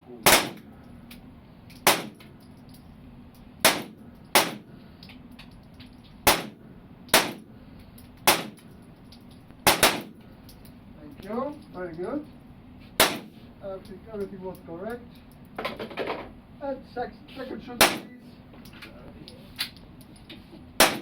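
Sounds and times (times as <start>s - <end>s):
gunshots with echo: 0.2s - 0.6s, 9.7s - 10.2s, 13.0s - 13.4s, 17.8s - 18.1s, 20.8s - 21.0s.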